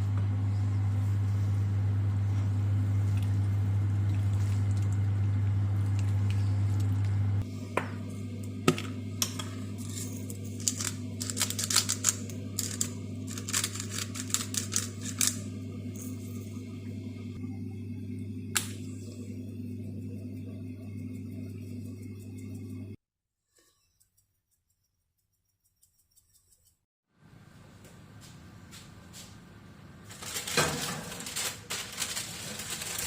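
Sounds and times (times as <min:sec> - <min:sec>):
appliance humming: 0:00.0 - 0:23.0, 0:27.2 - 0:33.0
kitchen handling clicks and clatter: 0:30.1 - 0:33.0.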